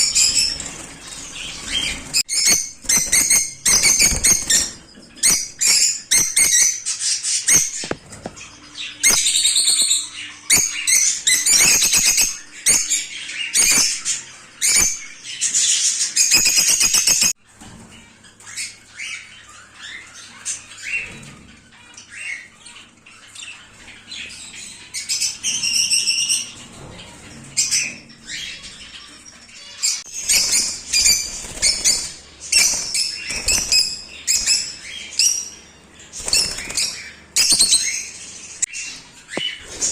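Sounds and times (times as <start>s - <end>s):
parrots chirping and squawking: 0.0s - 39.9s
wings flapping: 30.2s - 34.6s, 36.2s - 37.0s.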